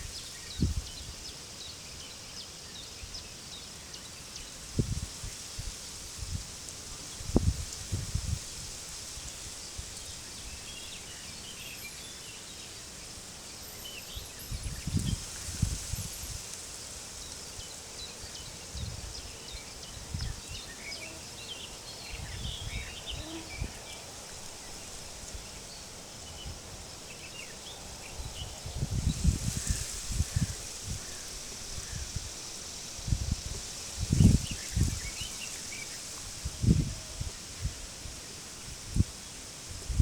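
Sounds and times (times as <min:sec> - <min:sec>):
steady high hiss: 0:00.0 - 0:40.0
wind buffeting microphone: 0:04.7 - 0:06.5, 0:07.1 - 0:09.4, 0:22.1 - 0:23.8, 0:27.8 - 0:35.4, 0:36.2 - 0:40.0.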